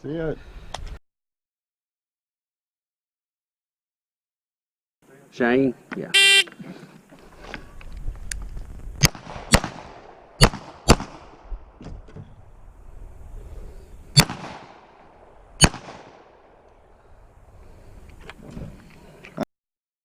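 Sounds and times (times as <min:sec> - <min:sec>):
pistol shots with echo: 0:09.0 - 0:11.4, 0:14.2 - 0:16.4.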